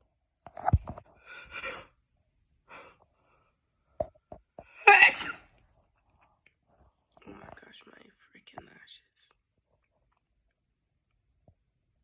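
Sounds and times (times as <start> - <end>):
woman sneezing: 4.8 - 5.5.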